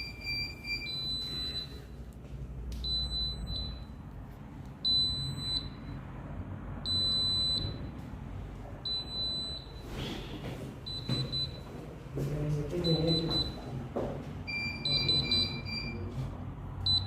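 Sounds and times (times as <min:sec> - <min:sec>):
alarm system beeping: 0:00.0 - 0:02.0, 0:02.8 - 0:04.0, 0:04.8 - 0:06.0, 0:06.8 - 0:08.0, 0:08.8 - 0:09.9, 0:10.8 - 0:11.7, 0:12.7 - 0:13.7, 0:14.5 - 0:16.1.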